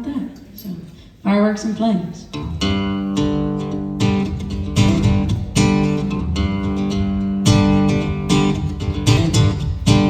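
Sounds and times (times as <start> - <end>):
acoustic guitar strumming chords: 2.4 - 10.0.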